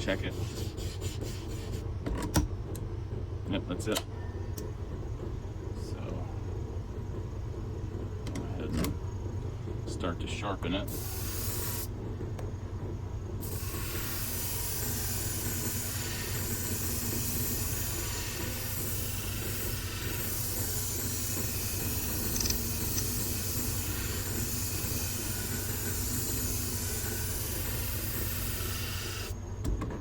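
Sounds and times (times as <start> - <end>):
sharpening machine running: 4.3 - 29.4
blade hissing against hone: 10.9 - 11.9, 13.4 - 29.4.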